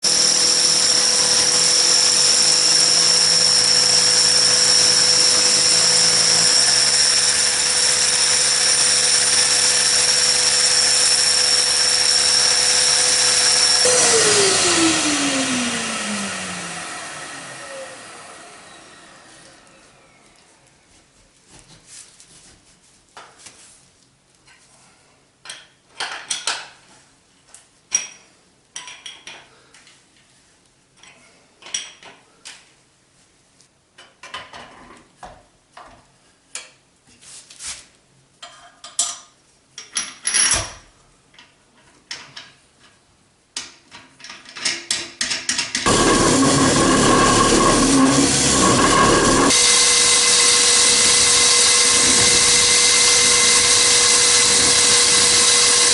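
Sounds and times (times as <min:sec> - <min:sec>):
core drill running: 0:00.0 - 0:19.7, 0:45.8 - 0:55.9.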